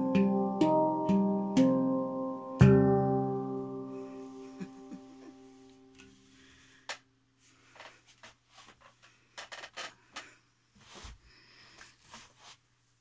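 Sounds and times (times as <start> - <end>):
faint clicks and rustles: 7.5 - 11.2.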